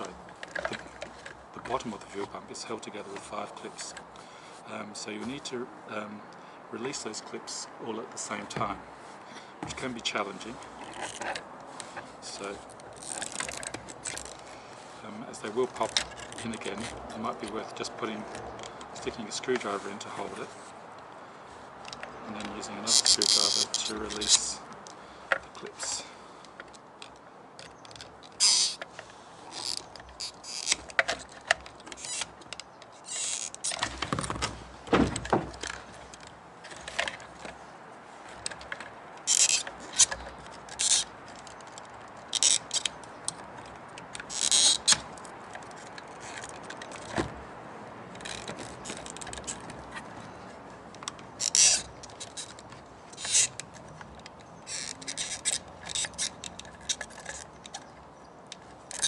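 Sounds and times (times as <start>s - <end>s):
metal scraping and clicking on plastic: 0.0s - 4.2s, 9.7s - 14.6s, 15.4s - 20.4s, 21.8s - 37.6s, 38.3s - 47.4s, 48.1s - 59.0s
plastic squeak: 10.7s - 14.5s, 15.5s - 20.3s, 22.0s - 24.5s, 27.1s - 37.5s, 38.3s - 47.4s, 48.1s - 58.0s.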